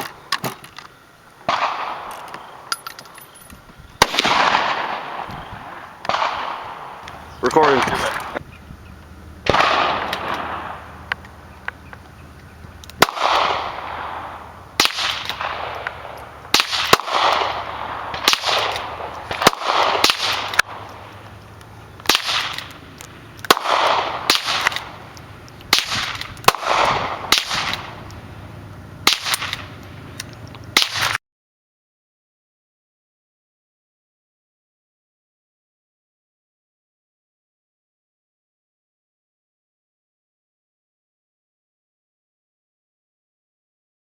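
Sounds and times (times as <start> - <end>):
bolt-action rifle shots: 1.4 - 3.4, 4.0 - 31.2.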